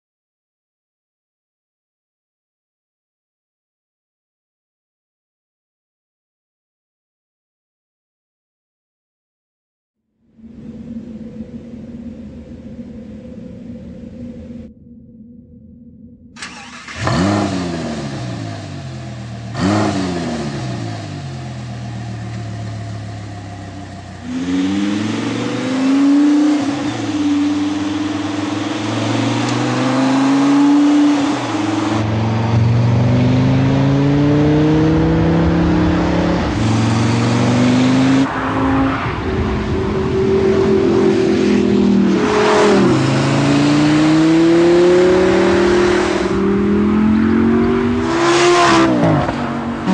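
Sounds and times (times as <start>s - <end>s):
car accelerating hard with gear changes: 16.4s - 38.3s, 40.0s - 49.9s
sports car engine revving: 16.4s - 38.3s, 40.0s - 49.9s.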